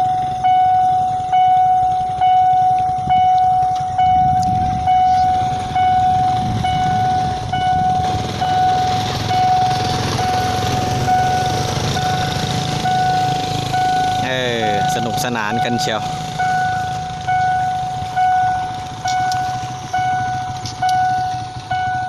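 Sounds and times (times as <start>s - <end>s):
level crossing warning bell ringing: 0.0s - 22.0s
low rumble of road vehicles: 0.0s - 22.0s.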